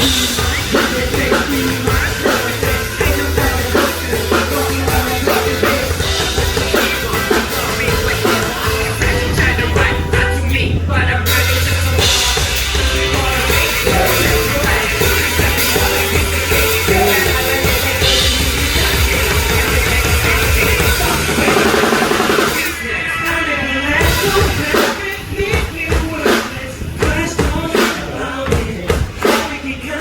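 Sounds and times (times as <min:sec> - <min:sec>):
band playing loud rock music: 0:00.0 - 0:30.0.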